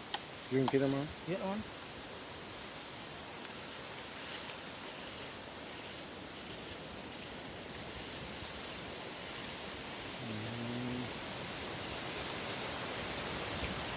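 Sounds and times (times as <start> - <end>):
outdoor background hiss: 0.0 - 13.9.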